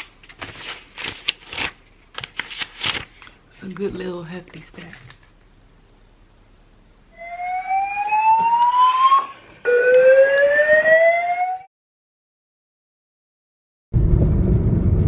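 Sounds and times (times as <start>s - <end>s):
rising siren-like wails: 7.1s - 11.7s.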